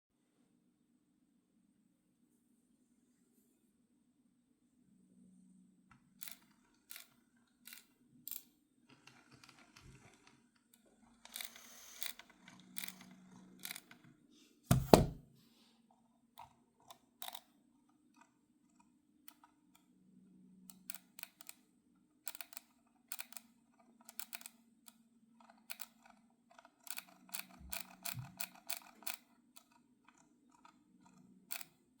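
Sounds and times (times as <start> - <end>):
mouse scroll wheel ticking: 6.2 - 14.1, 16.4 - 17.4, 20.7 - 21.6, 22.3 - 31.8.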